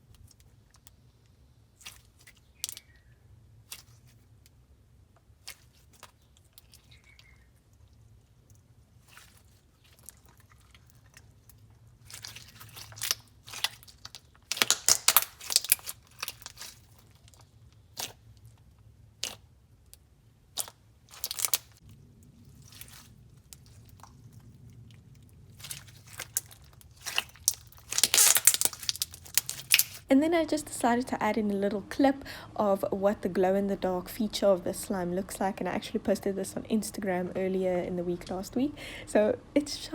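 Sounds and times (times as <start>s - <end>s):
slime crunchy crackling pops: 12.1s - 17.0s, 20.5s - 21.8s, 25.5s - 30.1s.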